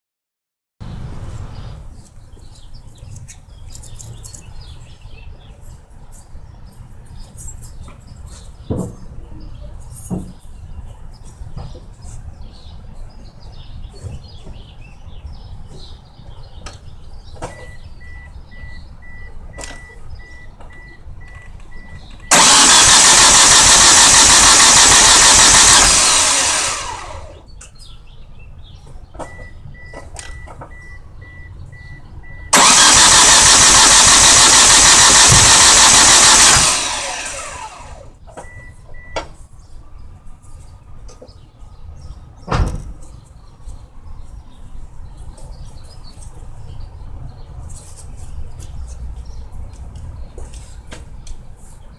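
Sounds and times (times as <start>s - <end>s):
car warning chime beeping: 17.6s - 22.4s, 29.2s - 32.8s
engine cranking without starting: 22.2s - 27.4s, 32.5s - 38.2s.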